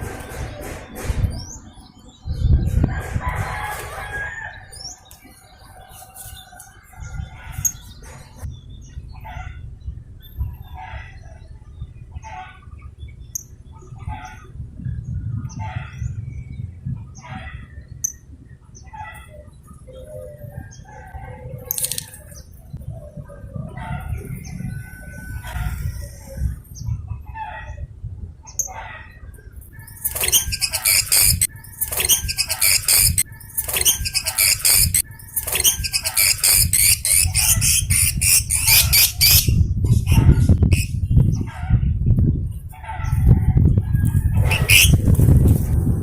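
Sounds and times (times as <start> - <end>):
rooster crowing: 2.9 - 4.9, 23.9 - 25.9
low rumble: 7.0 - 18.8, 39.5 - 46.0.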